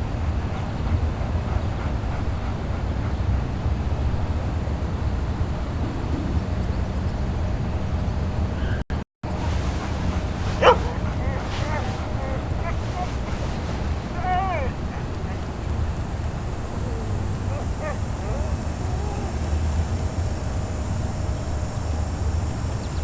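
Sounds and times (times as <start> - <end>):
wind rumble on microphone: 0.0 - 23.0
dog whimpering: 9.4 - 19.5.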